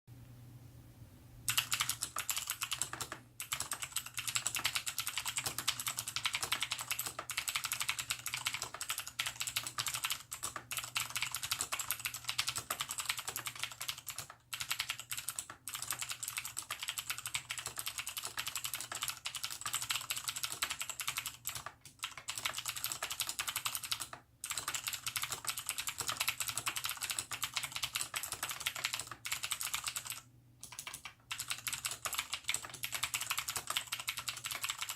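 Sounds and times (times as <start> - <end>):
faint low hum: 0.1 - 6.2
clicky mechanical keyboard typing: 1.5 - 34.9.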